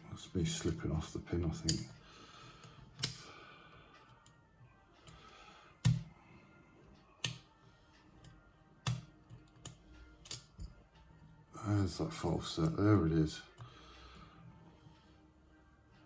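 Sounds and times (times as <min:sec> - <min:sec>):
lock pick metallic clicks: 0:01.6 - 0:02.0, 0:03.0 - 0:03.3, 0:07.2 - 0:07.5, 0:08.2 - 0:10.8.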